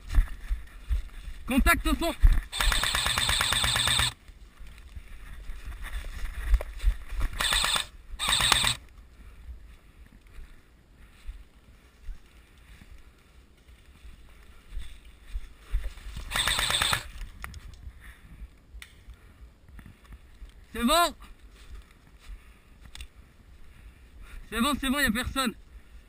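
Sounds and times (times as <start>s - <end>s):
airsoft rifle full-auto bursts: 2.5s - 4.2s, 7.3s - 8.8s, 16.3s - 17.2s.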